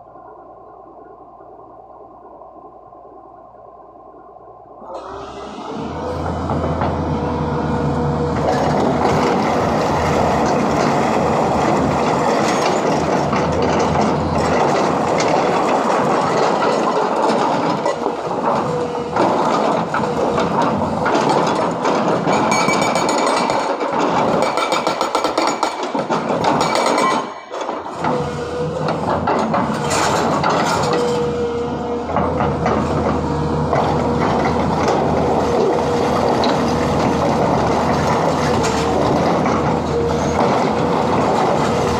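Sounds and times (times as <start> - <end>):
excavator engine running: 0.0 - 41.9
hydraulic rock breaker hammering: 6.0 - 41.9.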